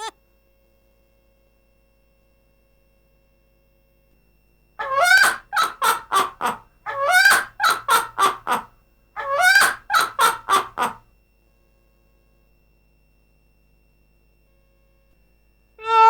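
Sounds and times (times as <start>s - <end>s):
myna bird laughing: 4.8s - 11.0s.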